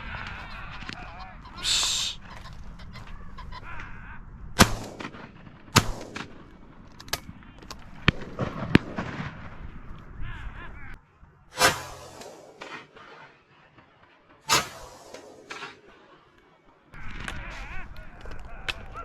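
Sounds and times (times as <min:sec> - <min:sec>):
shotgun shots: 0:04.6 - 0:07.3, 0:07.9 - 0:09.7, 0:11.5 - 0:13.5, 0:14.4 - 0:16.2.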